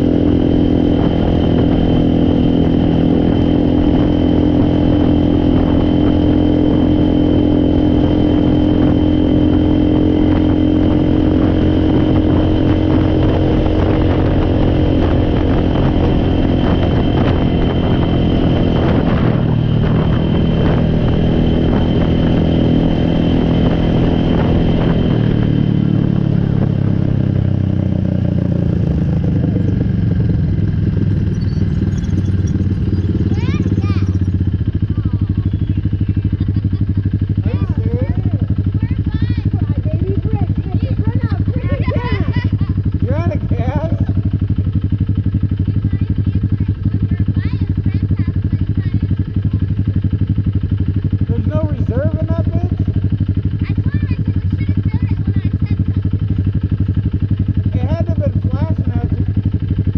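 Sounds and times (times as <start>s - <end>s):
atv engine running: 0.0s - 59.9s.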